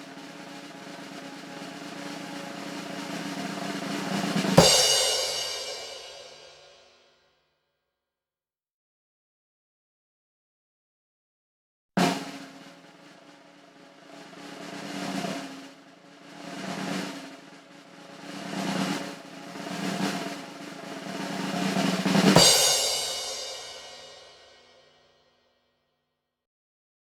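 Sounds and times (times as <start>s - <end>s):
snare drum rolls: 0.0s - 6.8s, 12.0s - 24.7s
cymbal ringing: 4.6s - 6.7s.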